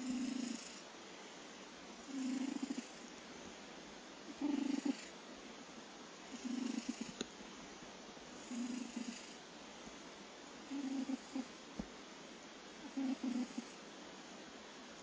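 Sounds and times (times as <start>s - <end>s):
cat snoring: 0.0s - 0.8s, 2.0s - 3.1s, 4.3s - 5.2s, 6.3s - 7.2s, 8.4s - 9.4s, 10.7s - 11.5s, 12.8s - 13.8s.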